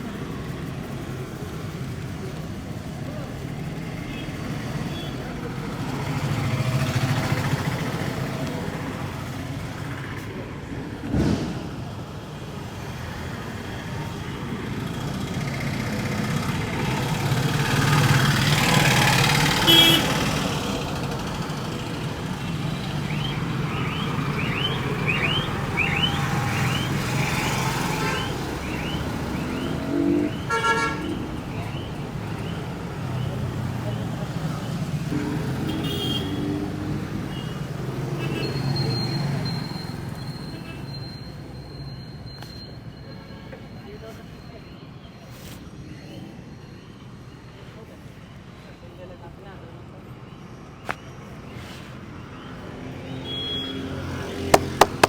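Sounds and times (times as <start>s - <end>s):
street traffic: 0.0s - 55.0s
car horn toots: 19.6s - 20.2s, 30.4s - 31.3s
thump: 54.6s - 55.0s.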